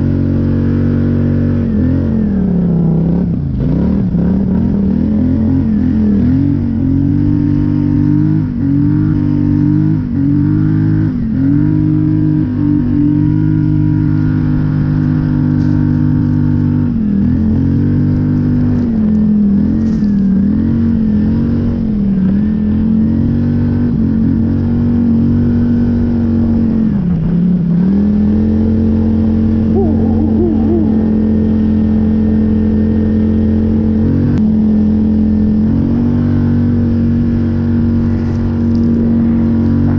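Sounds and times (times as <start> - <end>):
atv engine revving: 0.0 - 39.9.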